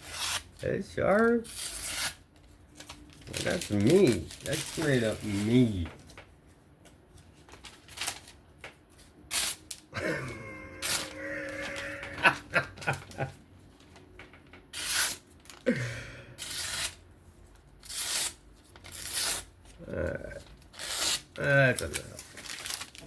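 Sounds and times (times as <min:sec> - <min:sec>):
knife blade slicing paper: 0:14.7 - 0:15.2, 0:17.8 - 0:19.5, 0:20.8 - 0:21.9.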